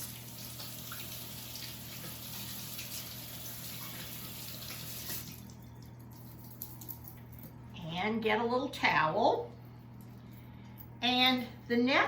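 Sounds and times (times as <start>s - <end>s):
tap water running: 0.0s - 7.6s.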